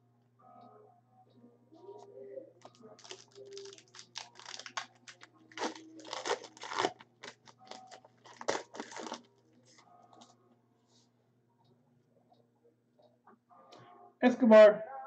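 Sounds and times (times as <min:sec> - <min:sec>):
wrapper crinkling and tearing: 0:02.7 - 0:09.3.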